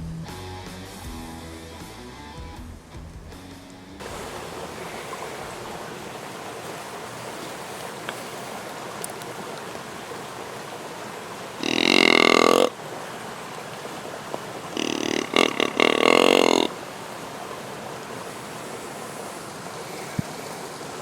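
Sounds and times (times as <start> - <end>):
background hiss: 2.0 - 21.0
buzzy deer grunt call: 11.6 - 12.8, 14.7 - 16.8.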